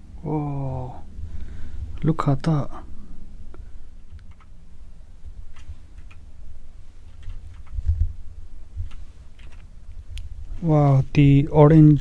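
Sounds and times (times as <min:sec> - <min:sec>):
low thuds: 0:05.2 - 0:10.6.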